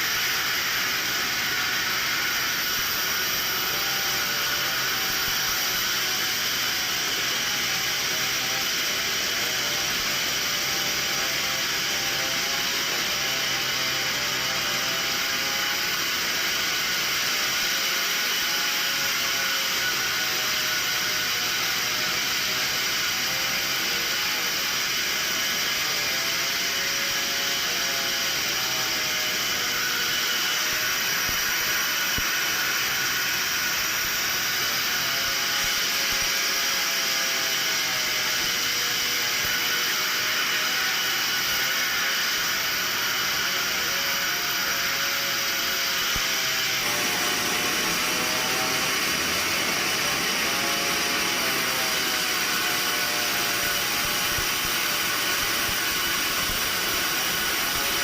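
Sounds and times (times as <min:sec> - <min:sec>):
sawmill machinery whining: 0:00.0 - 0:58.0.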